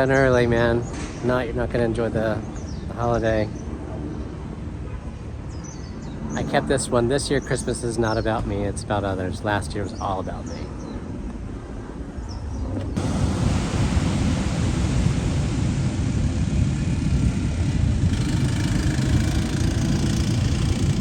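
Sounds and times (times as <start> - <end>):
wind rumbling on microphone: 0.0 - 21.0
ocean surf roaring: 12.9 - 21.0.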